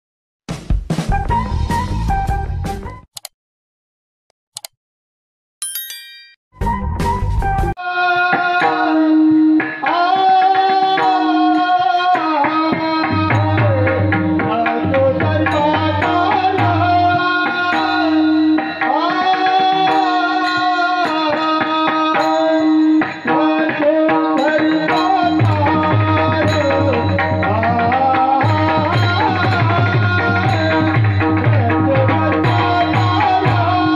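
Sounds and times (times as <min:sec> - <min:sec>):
tabla rhythm: 0:08.0 - 0:33.9.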